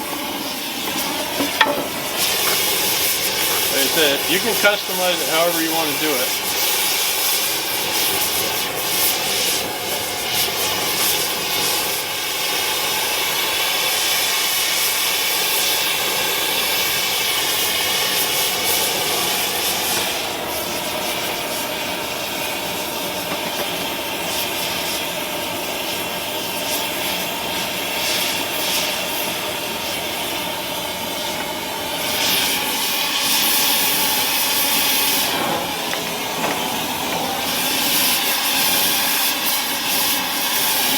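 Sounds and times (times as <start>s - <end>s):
torch flame hissing: 0.0s - 40.9s.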